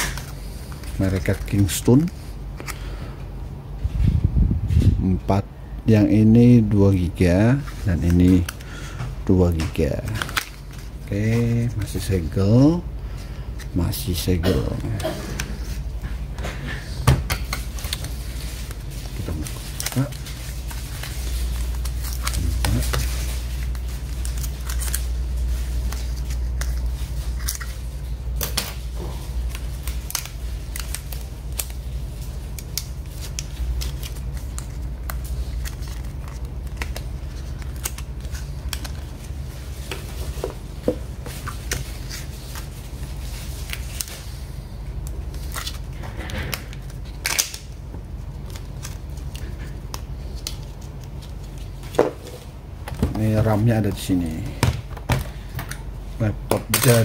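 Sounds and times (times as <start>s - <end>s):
steady low hum: 0.0s - 57.0s
plastic packaging crackling: 17.6s - 52.5s.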